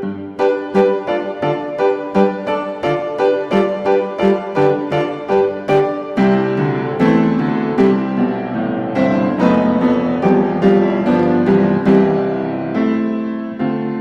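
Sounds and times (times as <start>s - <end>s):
slow solo piano melody: 0.0s - 14.0s.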